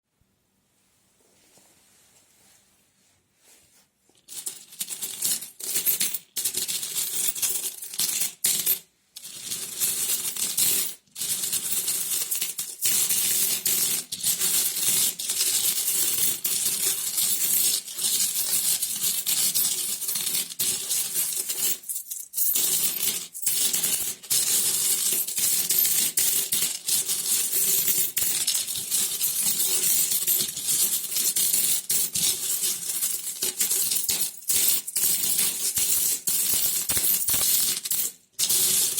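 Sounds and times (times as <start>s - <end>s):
coins jingling and clinking: 4.3s - 13.8s, 14.7s - 38.9s.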